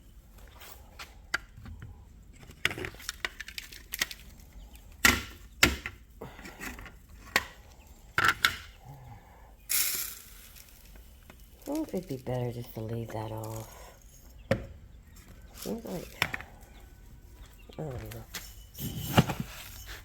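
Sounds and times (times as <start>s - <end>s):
rustling: 15.0s - 20.0s.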